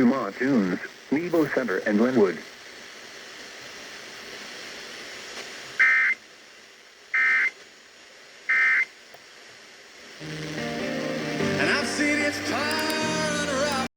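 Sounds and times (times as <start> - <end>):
faint hiss: 0.0 - 13.9
warbling digital data bursts: 5.8 - 6.2.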